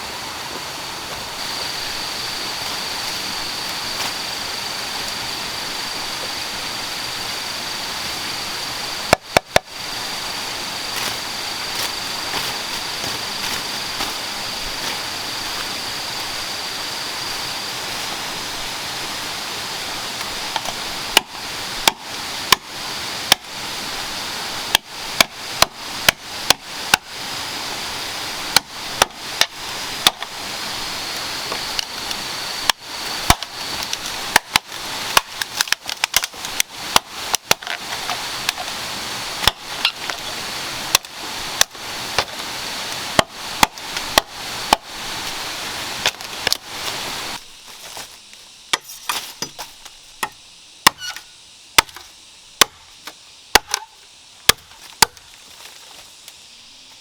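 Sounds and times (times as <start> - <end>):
steady hiss: 0.0 - 57.0
bamboo chopping strikes: 9.0 - 9.8, 20.1 - 23.6, 24.6 - 27.2, 28.4 - 30.4, 31.5 - 38.8, 39.4 - 44.9, 48.7 - 55.4.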